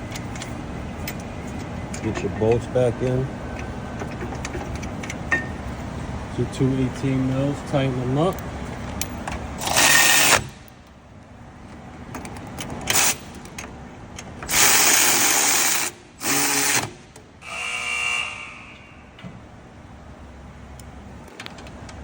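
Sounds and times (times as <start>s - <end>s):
power tool whirring: 9.6s - 10.6s, 14.5s - 19.0s.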